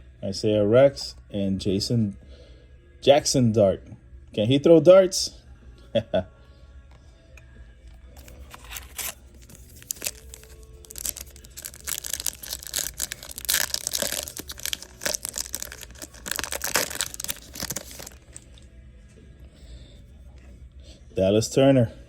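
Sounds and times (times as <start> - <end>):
foil wrapper tearing and crinkling: 8.2 - 18.5.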